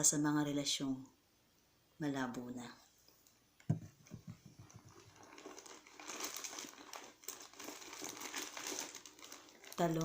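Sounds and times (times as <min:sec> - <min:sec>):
bag crinkling and rustling: 0:04.4 - 0:10.0.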